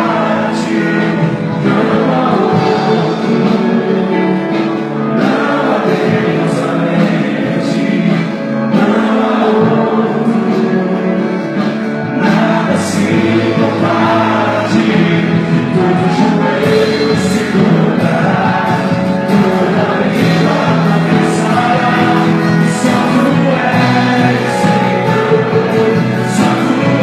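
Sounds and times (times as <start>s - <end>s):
gospel band and group singing: 0.0s - 27.0s.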